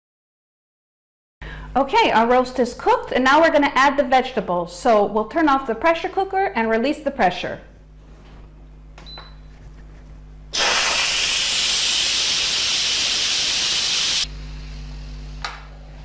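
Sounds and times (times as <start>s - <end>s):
steam hissing from pressure cooker: 10.6s - 14.3s.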